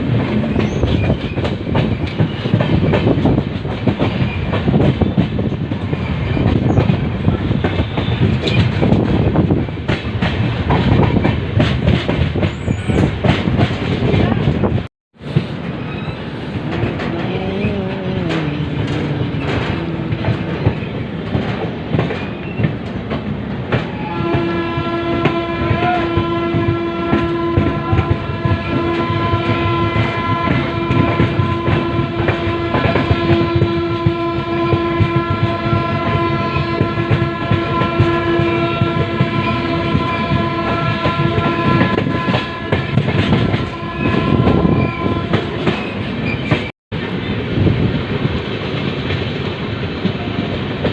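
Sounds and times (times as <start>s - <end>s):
wheels clacking over rail joints: 0.0s - 14.6s, 15.4s - 26.5s
train rumbling on rails: 0.0s - 50.9s
train horn: 23.8s - 46.0s.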